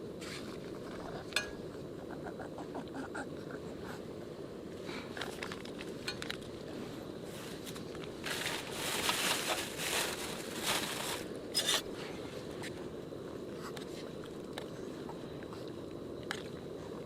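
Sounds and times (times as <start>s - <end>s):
low background noise: 0.0s - 17.0s
scraping crunching rustles: 7.3s - 11.9s.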